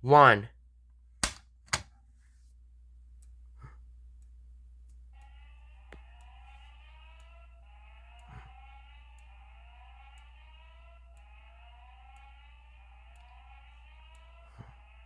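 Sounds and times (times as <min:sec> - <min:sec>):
steady low hum: 0:02.4 - 0:15.0
faint tick: 0:04.2 - 0:05.3, 0:13.1 - 0:13.4, 0:14.0 - 0:14.4
rising electronic alarm sweep: 0:05.2 - 0:15.0.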